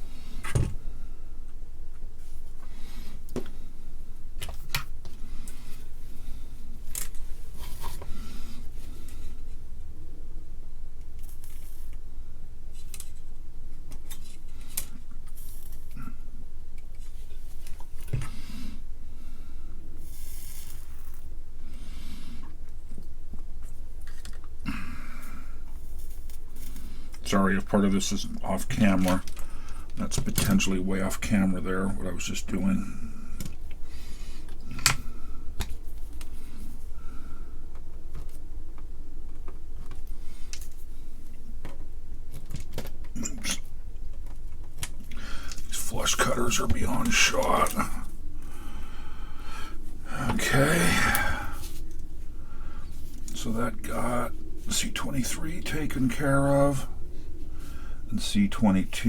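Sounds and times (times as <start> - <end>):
steady low hum: 0.0 - 59.0.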